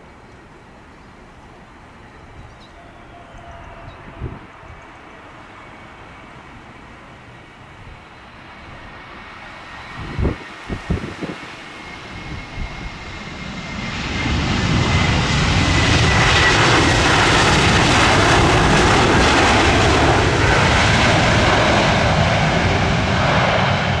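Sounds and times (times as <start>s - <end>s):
faint high whine: 0.0s - 14.3s
jet engines roaring: 2.9s - 24.0s.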